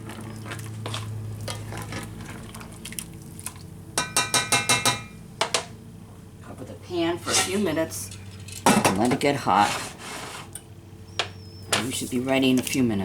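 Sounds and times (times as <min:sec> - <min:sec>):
utensil scraping frying pan: 0:07.1 - 0:10.6.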